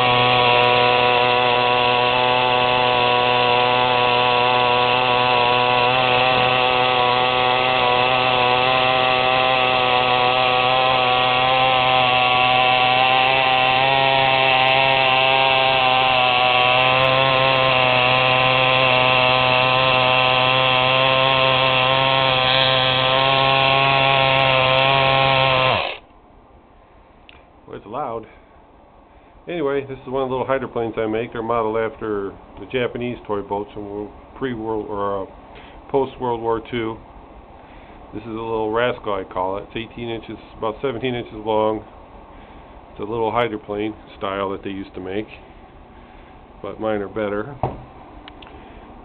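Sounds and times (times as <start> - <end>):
toy electric motor buzzing: 0.0 - 26.1.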